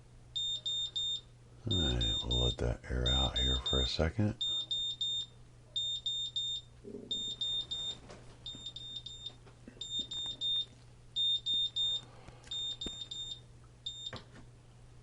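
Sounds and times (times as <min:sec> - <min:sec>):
alarm buzzer high-pitched beeps: 0:00.4 - 0:14.2.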